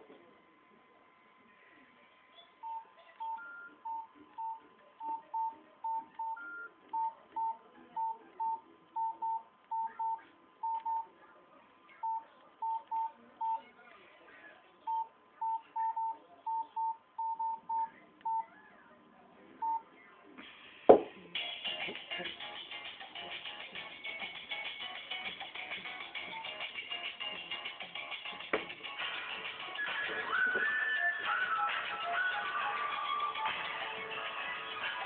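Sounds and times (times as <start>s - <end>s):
phone keypad beeps: 12.0s - 13.6s.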